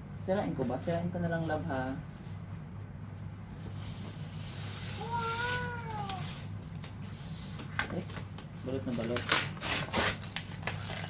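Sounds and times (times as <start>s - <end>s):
steady low hum: 0.0s - 9.7s
cat meowing: 5.0s - 6.4s
packaging being torn open: 8.9s - 11.0s.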